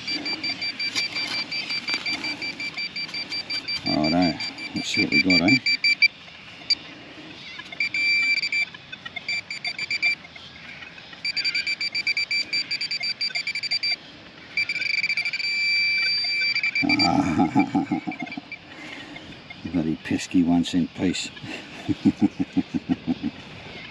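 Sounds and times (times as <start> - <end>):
metal detector beeping: 0.0 - 6.8, 7.5 - 10.3, 11.2 - 19.8.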